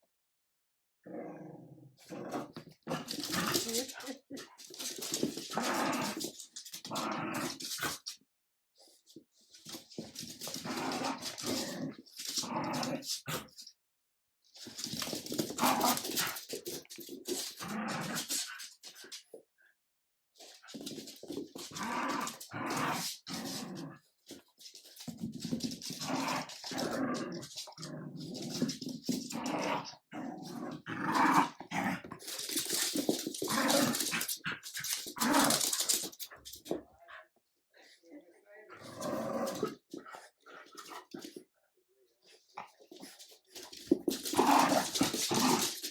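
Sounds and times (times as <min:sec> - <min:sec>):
dogs growling: 0:01.1 - 0:04.6, 0:05.2 - 0:08.1, 0:10.4 - 0:13.5, 0:21.6 - 0:24.0, 0:25.4 - 0:36.8, 0:38.7 - 0:41.4, 0:43.8 - 0:45.9
dogs scuffling: 0:02.5 - 0:08.1, 0:09.5 - 0:13.3, 0:14.6 - 0:19.2, 0:20.4 - 0:36.8, 0:42.6 - 0:45.9.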